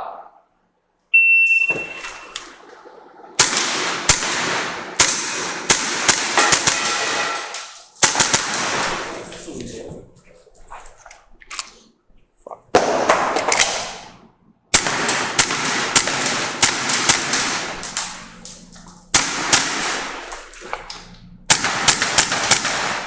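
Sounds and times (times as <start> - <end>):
airsoft pistol firing: 3.4 - 9.3, 12.8 - 14.1, 14.7 - 23.0.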